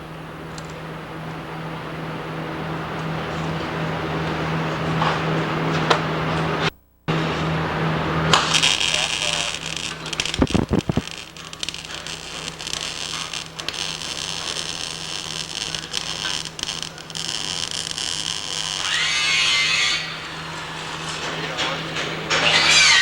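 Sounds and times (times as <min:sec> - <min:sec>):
power tool running: 0:07.1 - 0:23.0.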